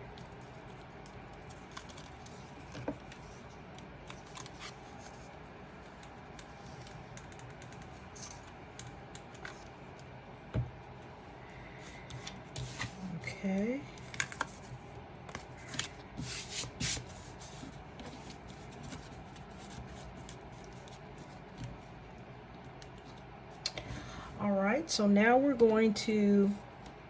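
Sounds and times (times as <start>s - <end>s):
faint steady hum: 0.0s - 27.0s
paper rustling: 15.3s - 21.4s.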